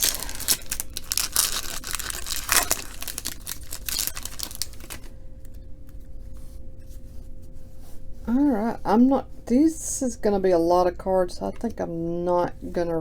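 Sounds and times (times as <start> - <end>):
plastic wrapper crinkling and tearing: 0.0 - 5.1.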